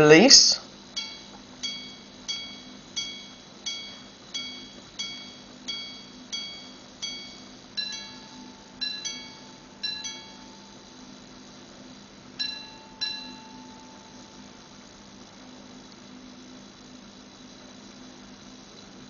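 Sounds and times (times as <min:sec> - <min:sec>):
pocket watch striking gongs: 0:00.9 - 0:15.2.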